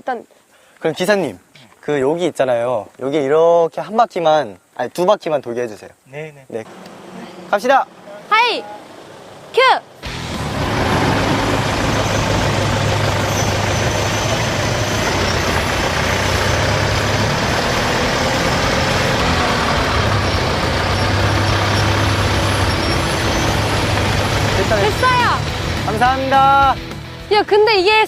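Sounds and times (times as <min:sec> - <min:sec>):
construction machinery humming: 0:06.6 - 0:27.2.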